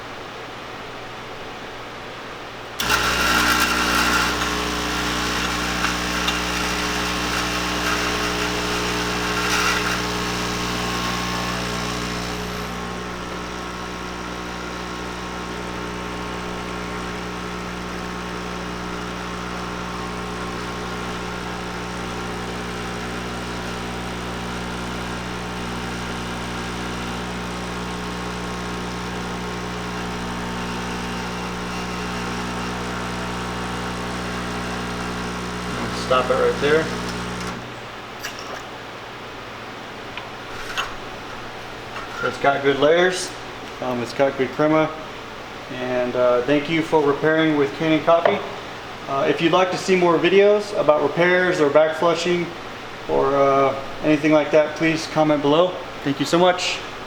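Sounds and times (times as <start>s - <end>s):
espresso machine pump buzzing: 2.8s - 38.6s.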